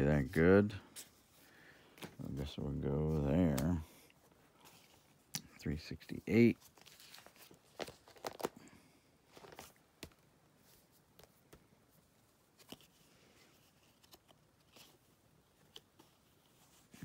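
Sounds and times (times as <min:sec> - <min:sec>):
cards rustling: 0:00.0 - 0:17.0
light clicks of plastic pages: 0:06.6 - 0:08.6.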